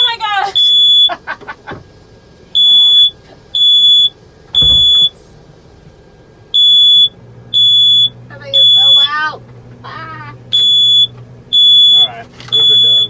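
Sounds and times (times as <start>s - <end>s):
smoke alarm beeping: 0.6s - 1.2s, 2.6s - 5.2s, 6.5s - 9.2s, 10.5s - 13.0s
dull low bump: 4.5s - 6.0s.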